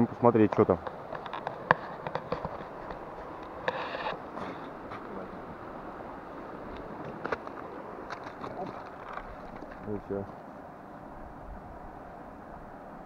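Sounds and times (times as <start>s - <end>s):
short rasping scrape: 3.6s - 4.8s.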